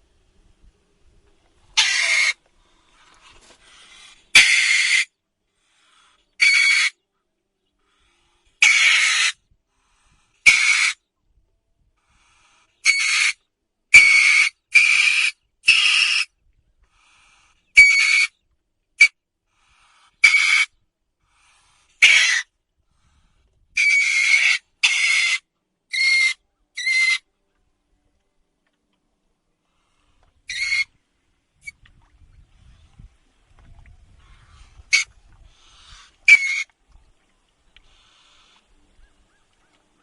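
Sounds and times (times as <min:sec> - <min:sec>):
otter high-pitched calls: 0:01.8 - 0:02.4, 0:04.4 - 0:05.1, 0:06.4 - 0:07.0, 0:12.8 - 0:13.4, 0:14.0 - 0:16.3, 0:17.8 - 0:18.3, 0:20.2 - 0:20.7, 0:23.8 - 0:27.3, 0:30.5 - 0:31.0, 0:34.2 - 0:36.7.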